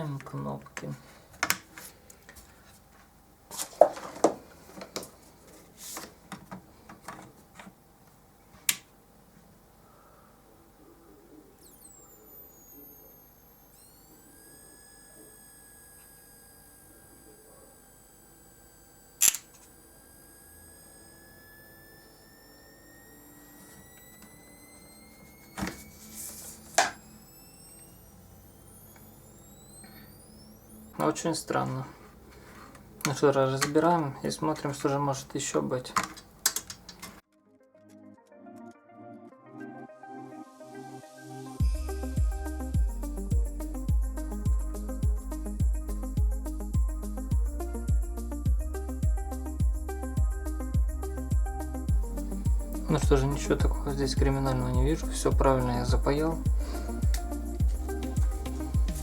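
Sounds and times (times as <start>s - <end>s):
monitor high-pitched whistle: 11.6s - 31.6s, 41.6s - 59.0s
sharp clicks: 19.2s - 19.7s, 36.0s - 37.2s
cable connectors plugging in: 19.2s - 19.8s, 23.0s - 34.9s, 35.9s - 37.2s.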